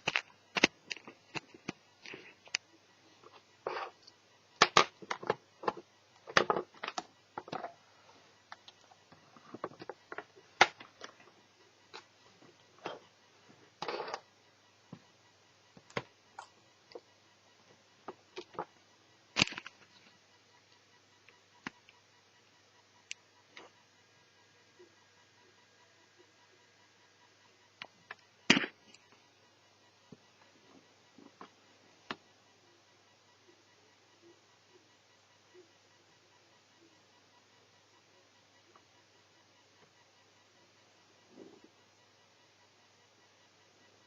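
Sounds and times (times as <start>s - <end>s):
small plastic and metal parts handled: 0.0s - 2.6s, 19.4s - 20.0s.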